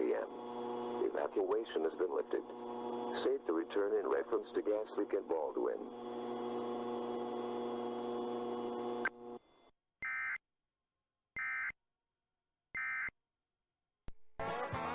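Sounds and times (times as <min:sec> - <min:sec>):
steady buzz: 0:00.0 - 0:09.4.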